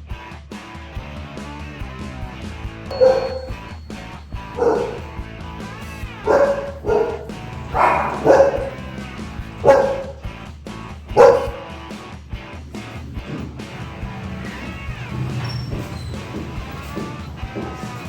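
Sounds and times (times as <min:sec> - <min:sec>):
background music: 0:02.5 - 0:18.0
dog barking: 0:02.9 - 0:11.8.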